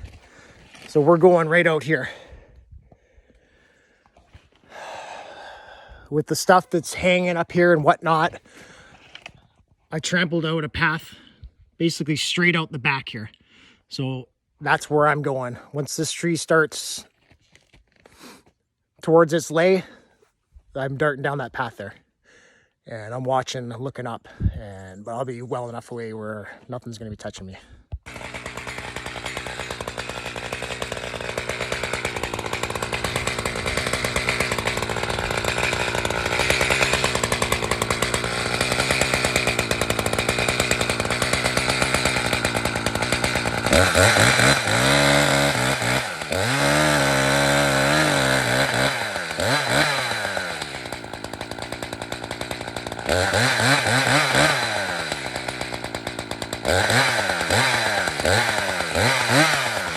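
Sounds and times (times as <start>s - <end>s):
chainsaw cutting wood: 0.0s - 2.4s, 6.4s - 9.4s, 28.0s - 59.9s.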